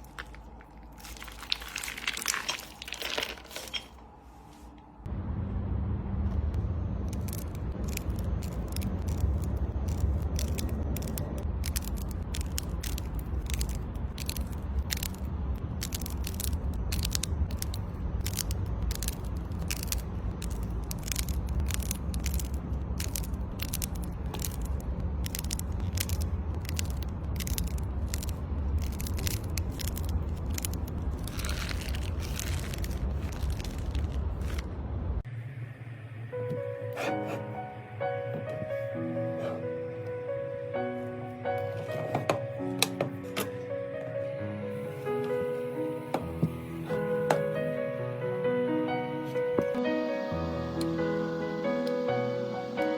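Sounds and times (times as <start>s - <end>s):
steady low rumble: 4.8s - 36.8s.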